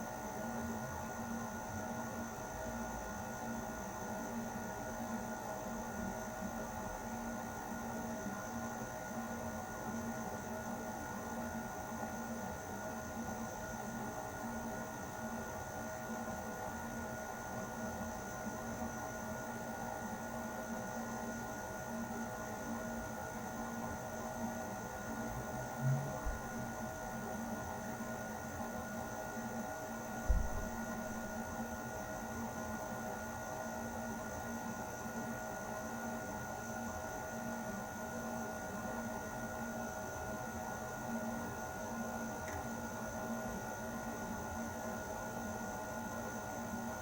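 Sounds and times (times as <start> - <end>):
air conditioner running: 20.5 - 27.4, 29.1 - 31.9
low thuds: 25.8 - 26.7, 30.3 - 31.3.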